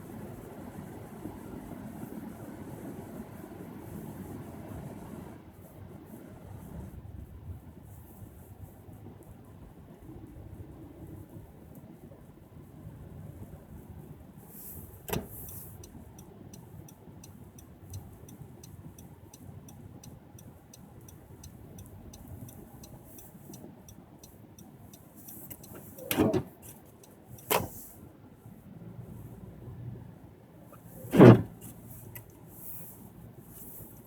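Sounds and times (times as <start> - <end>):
car road and engine rumble: 0.0 - 34.0
faint fast ticks: 15.3 - 26.0.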